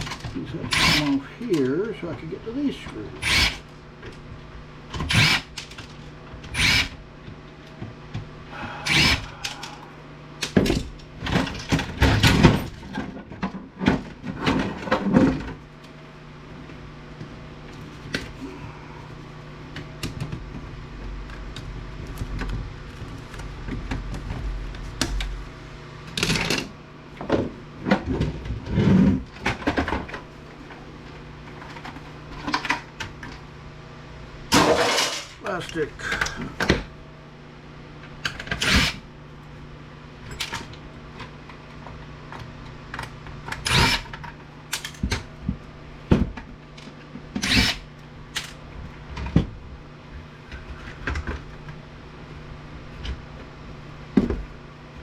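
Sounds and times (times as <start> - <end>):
steady low hum: 0.0 - 55.0
parts clattering being pried off: 34.5 - 35.4.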